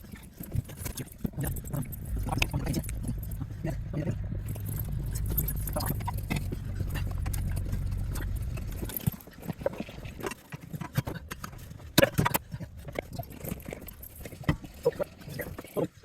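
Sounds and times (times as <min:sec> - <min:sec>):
metal parts clinking and knocking: 0:00.4 - 0:15.8
low steady rumble: 0:00.6 - 0:10.3.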